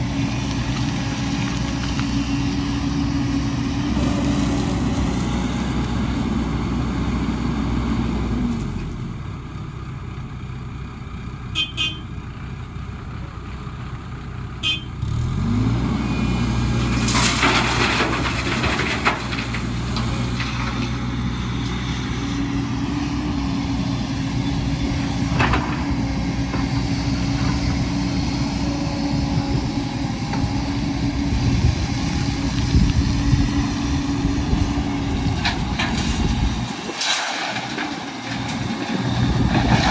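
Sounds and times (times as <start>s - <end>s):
diesel engine of heavy machinery: 0.0s - 39.9s
rattling and scraping: 16.9s - 21.8s, 25.0s - 27.9s, 34.5s - 39.9s.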